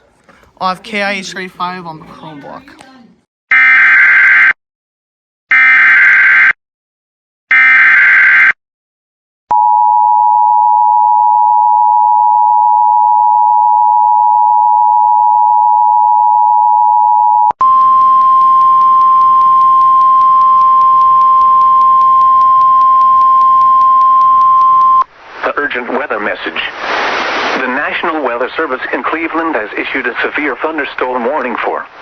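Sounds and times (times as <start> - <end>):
single-pitch alarm tone: 9.5 - 25.0
radio hiss: 25.1 - 32.0.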